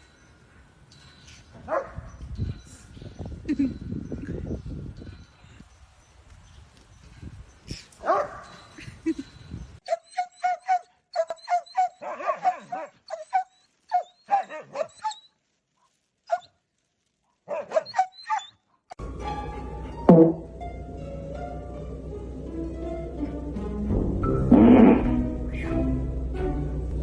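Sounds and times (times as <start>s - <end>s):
dog barking: 1.6s - 2.0s, 8.0s - 8.5s, 9.9s - 15.2s, 17.5s - 18.5s.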